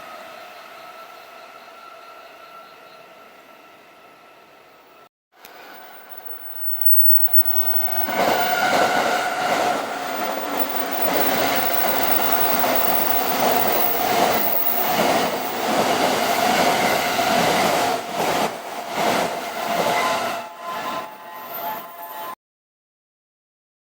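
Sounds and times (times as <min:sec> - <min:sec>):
electric train passing: 0:05.5 - 0:22.3
wheels clattering over rail joints: 0:09.9 - 0:16.5.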